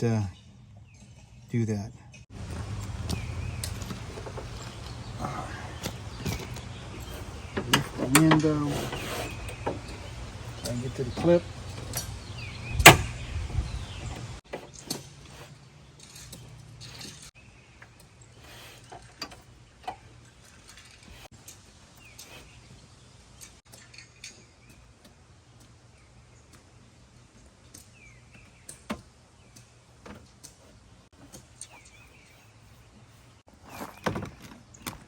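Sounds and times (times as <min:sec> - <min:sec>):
clicks and rattles of car parts: 0:02.5 - 0:13.2, 0:13.9 - 0:21.6, 0:27.3 - 0:32.0, 0:33.6 - 0:35.0.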